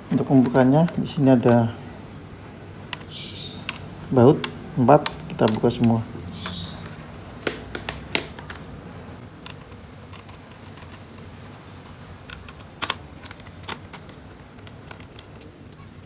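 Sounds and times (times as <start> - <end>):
screwdriver and screws clicking: 2.9 - 8.7.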